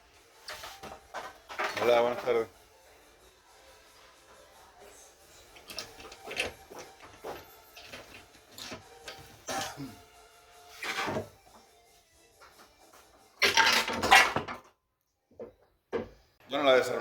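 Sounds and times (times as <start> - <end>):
metal parts clinking and scraping: 5.4 - 7.0, 13.4 - 14.5.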